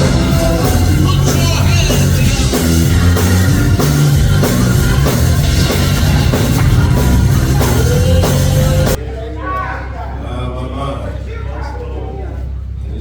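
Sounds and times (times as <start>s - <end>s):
live band music: 0.0s - 9.0s.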